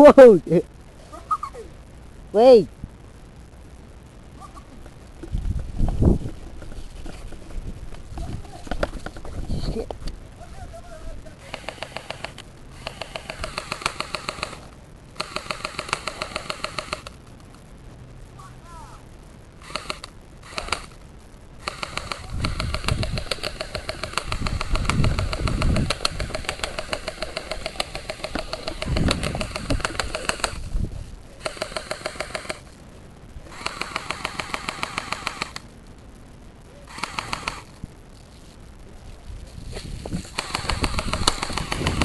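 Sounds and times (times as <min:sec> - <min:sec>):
low rumbles of movement: 0:01.8 - 0:18.3, 0:19.1 - 0:34.2
airsoft gun firing bursts: 0:11.4 - 0:17.1, 0:19.6 - 0:21.0, 0:21.6 - 0:30.7, 0:31.4 - 0:32.7, 0:33.5 - 0:35.6, 0:36.9 - 0:37.7, 0:40.3 - 0:42.0.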